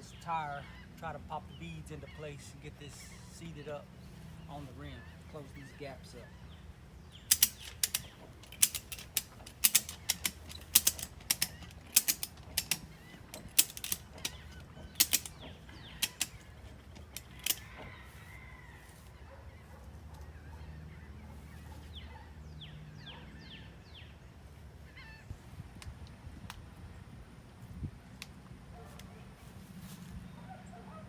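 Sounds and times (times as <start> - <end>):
ratchet pawl clicking: 7.3 - 17.8.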